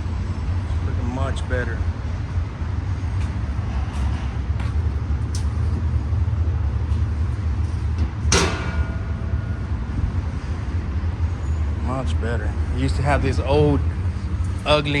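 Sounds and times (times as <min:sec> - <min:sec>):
low rumble: 0:01.5 - 0:11.8
metallic clank: 0:07.9 - 0:11.6.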